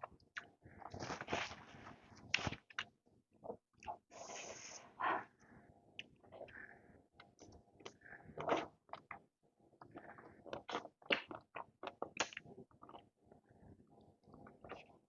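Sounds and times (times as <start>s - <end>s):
person chewing food: 0.1s - 4.8s, 6.0s - 13.0s.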